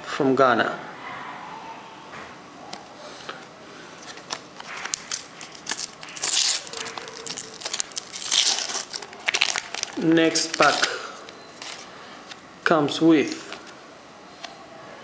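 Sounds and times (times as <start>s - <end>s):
paper wrapper crinkling and tearing: 4.0s - 12.4s.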